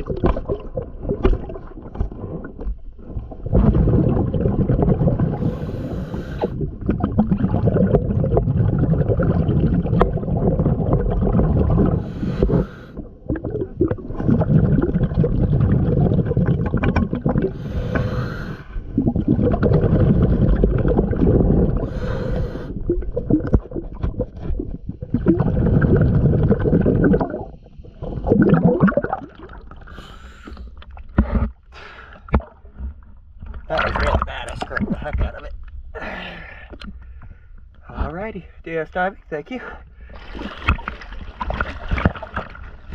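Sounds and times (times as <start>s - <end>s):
bubbling regulator exhalations: 0.0s - 32.6s, 33.6s - 35.2s.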